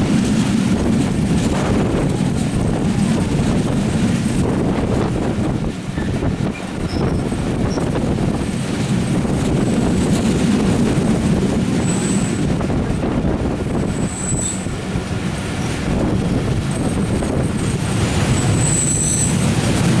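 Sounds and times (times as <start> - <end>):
train rumbling on rails: 0.0 - 20.0
high-pitched wheel squeals: 14.0 - 14.8, 18.3 - 19.5.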